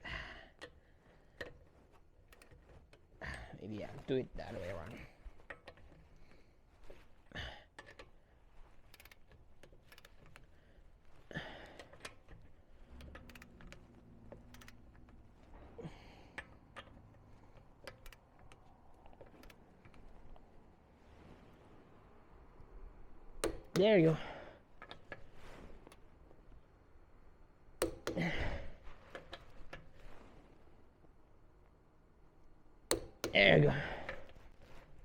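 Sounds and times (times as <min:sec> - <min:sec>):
torque wrench clicks and knocks: 0:01.4 - 0:03.1, 0:07.8 - 0:10.6, 0:11.8 - 0:15.5, 0:16.3 - 0:20.1, 0:23.4 - 0:23.9, 0:27.8 - 0:28.5, 0:32.9 - 0:34.9.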